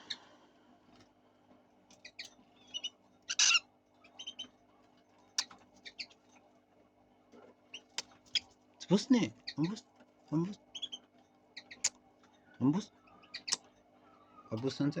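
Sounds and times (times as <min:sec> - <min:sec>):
lovebirds chirping: 0:00.0 - 0:00.4, 0:02.0 - 0:04.6, 0:05.3 - 0:06.2, 0:07.7 - 0:15.0
harsh bird squawk: 0:02.0 - 0:04.5, 0:12.9 - 0:14.8.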